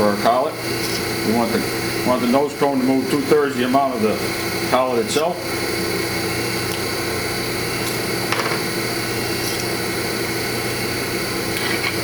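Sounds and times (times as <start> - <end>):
electric motor humming: 0.0 - 12.0.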